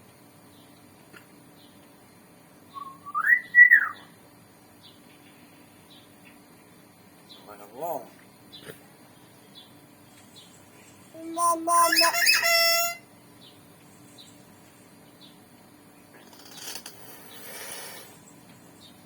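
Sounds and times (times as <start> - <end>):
hill myna whistled call: 2.8 - 4.0, 11.2 - 13.0.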